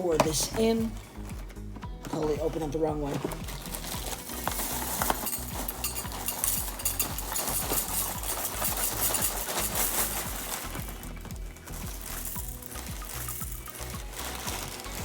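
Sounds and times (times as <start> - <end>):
cereal flakes pouring into bowl: 3.6 - 15.0.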